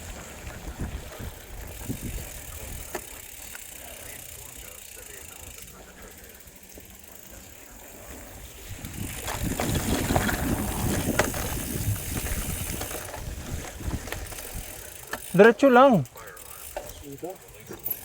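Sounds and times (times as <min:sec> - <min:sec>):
wind buffeting microphone: 0:00.0 - 0:03.0, 0:08.4 - 0:14.9.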